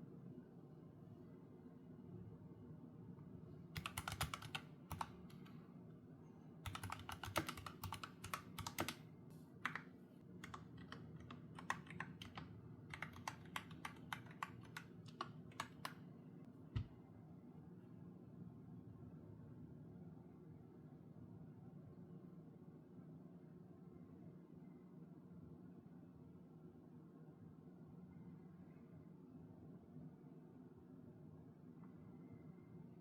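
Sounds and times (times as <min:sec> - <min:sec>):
mechanical keyboard typing: 0:03.8 - 0:05.6, 0:06.6 - 0:09.0, 0:09.6 - 0:16.0.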